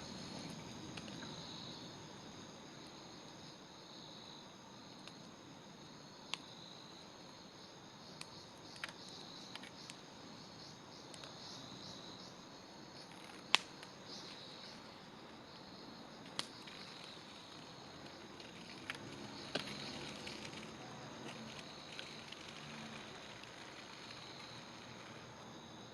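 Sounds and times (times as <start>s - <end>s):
night insects chirring: 0.0s - 25.9s
campfire crackling and popping: 8.1s - 10.1s, 13.0s - 15.4s, 16.2s - 25.3s.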